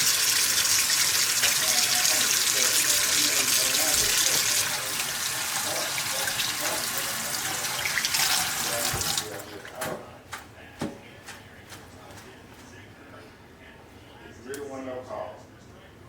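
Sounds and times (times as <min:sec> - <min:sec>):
faucet running into sink: 0:00.0 - 0:09.9.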